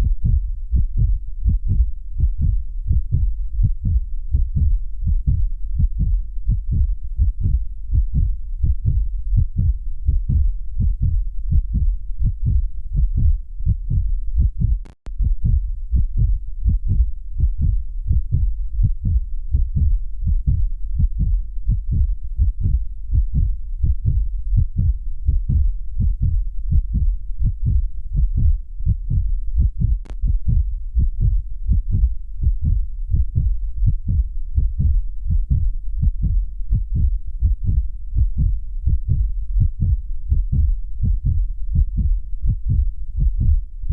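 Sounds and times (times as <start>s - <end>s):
heartbeat thumps: 0.0s - 43.9s
click: 14.8s - 15.0s.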